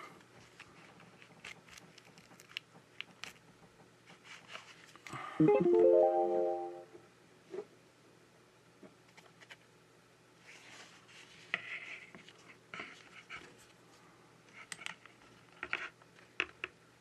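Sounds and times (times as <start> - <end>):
rising piano-like chime: 5.4 - 6.9
faint small clicks and taps: 14.5 - 16.8.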